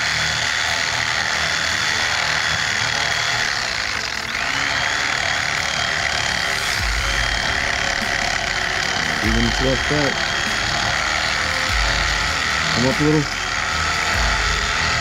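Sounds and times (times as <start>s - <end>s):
electric knife cutting foam: 0.0s - 15.0s.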